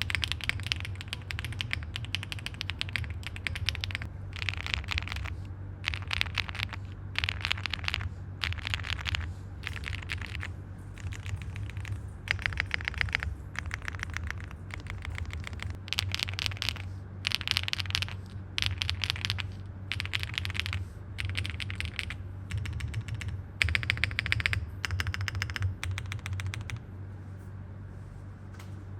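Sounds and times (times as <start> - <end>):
mechanical keyboard typing: 0.0 - 26.8
steady low hum: 0.0 - 28.9.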